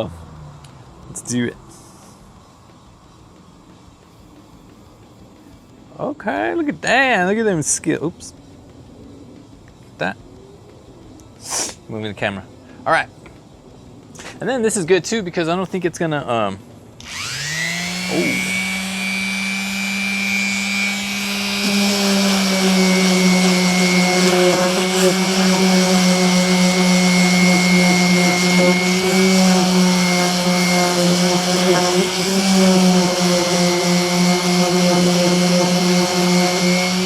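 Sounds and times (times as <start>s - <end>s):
electric sander running: 17.0s - 37.0s
sandpaper rubbing on plastic: 19.3s - 37.0s.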